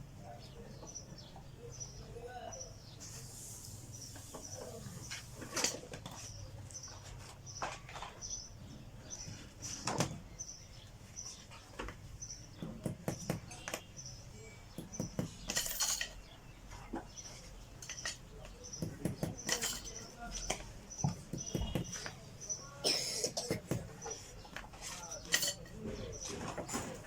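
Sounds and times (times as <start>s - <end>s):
tools clinking on bicycle parts: 15.0s - 16.3s, 17.8s - 18.6s, 19.3s - 20.6s, 24.9s - 25.9s.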